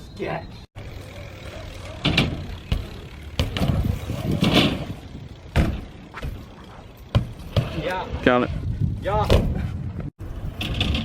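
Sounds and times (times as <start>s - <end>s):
bike tyres on concrete: 0.0s - 11.0s
bike knocking on ramps: 1.6s - 8.3s.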